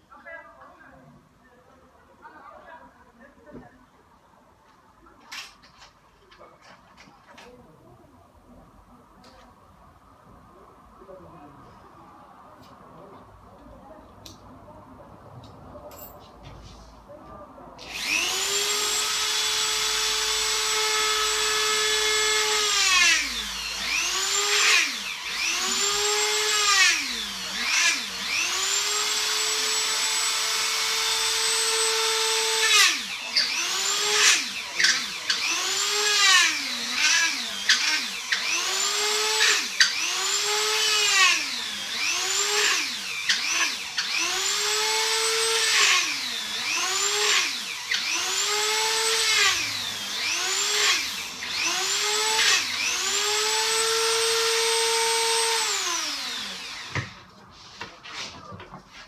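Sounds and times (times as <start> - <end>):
electric drill whining: 17.8 - 57.3.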